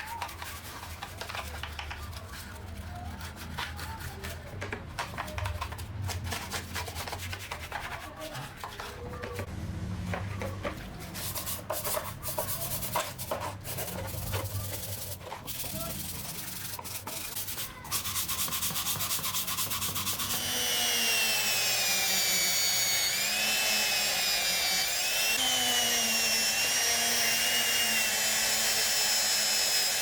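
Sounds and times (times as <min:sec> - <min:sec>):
rubbing strokes sanding: 0:11.0 - 0:21.0.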